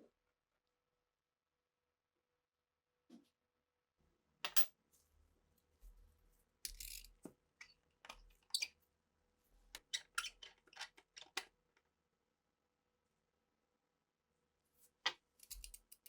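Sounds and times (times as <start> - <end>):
metal pistol parts clicking: 6.7 - 7.1, 15.4 - 16.0.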